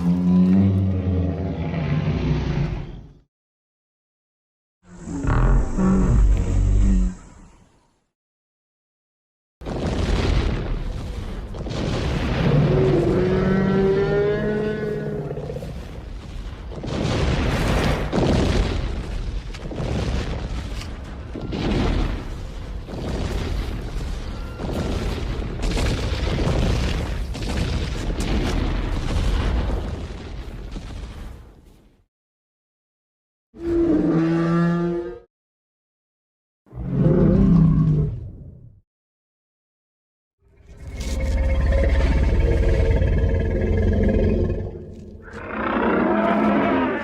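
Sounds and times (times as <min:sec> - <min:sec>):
deep rumbling dinosaur calls: 0:40.9 - 0:47.0.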